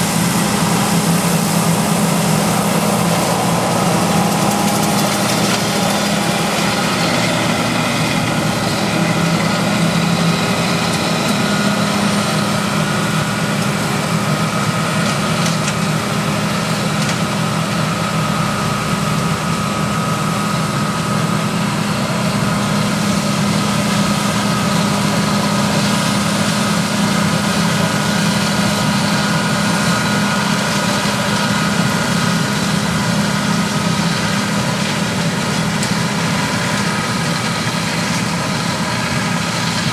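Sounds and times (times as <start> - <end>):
combine engine drone: 0.0 - 39.9
steady high whine: 0.0 - 39.9.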